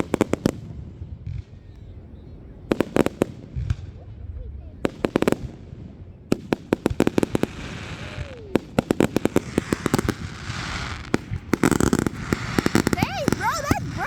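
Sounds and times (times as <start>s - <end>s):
fireworks cracking and popping: 0.0s - 1.8s, 2.6s - 14.0s
hissing crackle: 6.3s - 14.0s.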